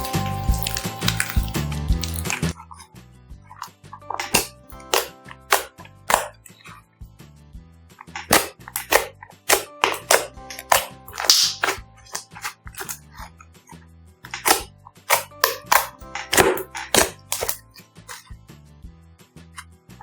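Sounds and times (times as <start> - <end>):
slime popping and snapping: 0.0 - 2.5, 4.0 - 6.4, 8.1 - 13.0, 14.3 - 18.2.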